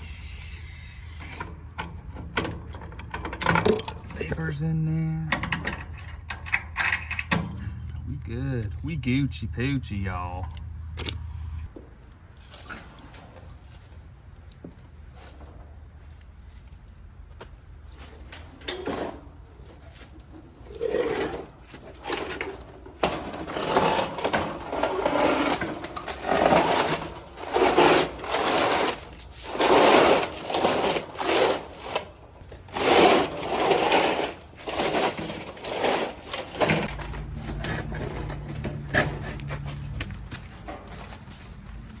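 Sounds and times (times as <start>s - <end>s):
steady low hum: 4.1s - 11.7s.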